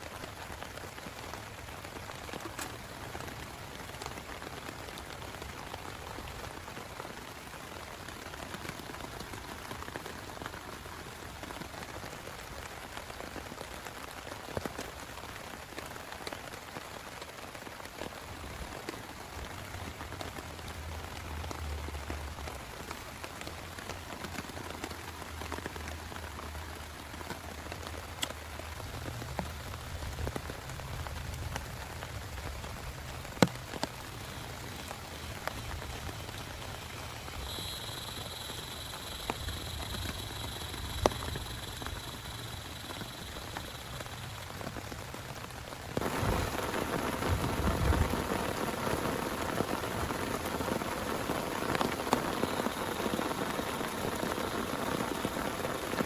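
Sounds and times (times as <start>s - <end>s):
sharp raindrop ticks: 0.0s - 56.0s
steady rain: 0.0s - 56.0s
thin high tone: 37.2s - 44.6s.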